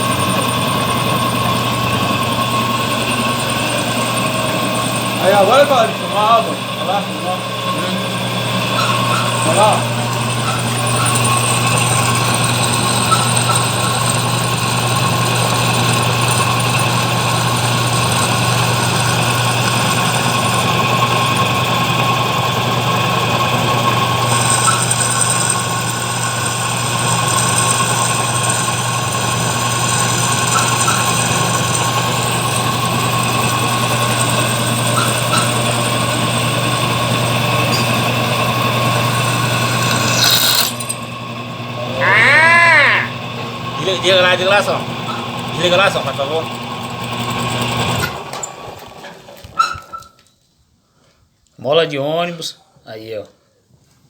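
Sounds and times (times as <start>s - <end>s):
thin high whine: 0.0s - 20.6s, 24.2s - 41.2s, 41.8s - 46.4s
drill bit drilling into steel: 0.0s - 48.5s
drill press motor humming: 0.0s - 49.1s.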